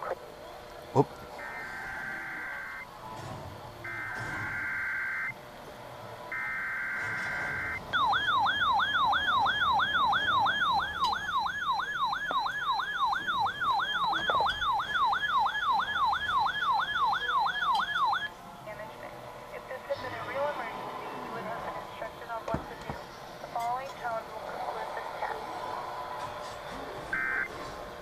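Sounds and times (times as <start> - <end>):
yelping siren-like alert tone: 1.4 - 2.9, 3.8 - 5.4, 6.3 - 18.3, 27.2 - 27.5.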